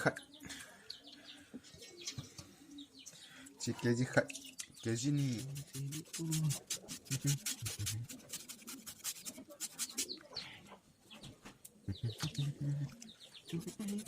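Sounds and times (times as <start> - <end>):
person humming low: 11.9 - 14.0.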